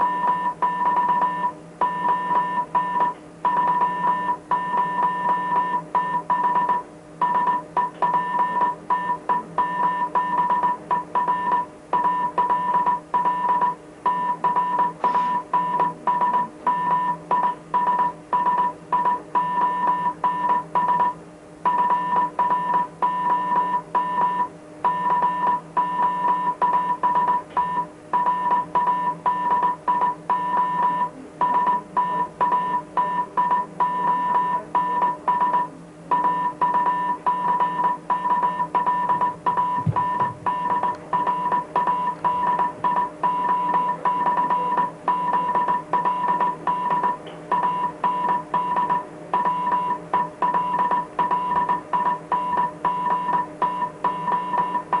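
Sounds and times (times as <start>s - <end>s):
faint low hum: 0.0s - 55.0s
morse code beeps: 0.0s - 55.0s.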